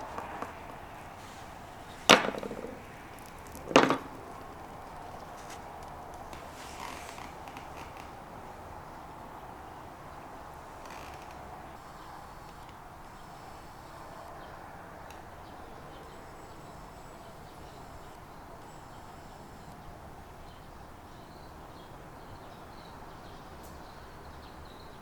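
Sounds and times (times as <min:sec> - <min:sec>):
faint high steady tones: 0:00.0 - 0:06.1, 0:11.7 - 0:20.7
background hiss: 0:00.0 - 0:22.0
soft clicks: 0:11.3 - 0:14.4.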